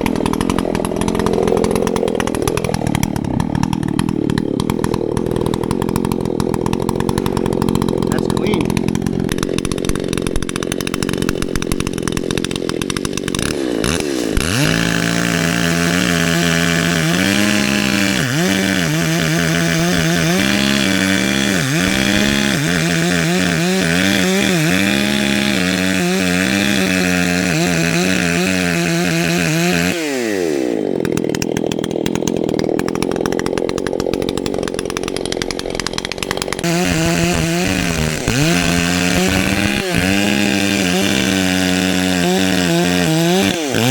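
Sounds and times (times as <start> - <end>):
chainsaw cutting wood: 0.0 - 43.9.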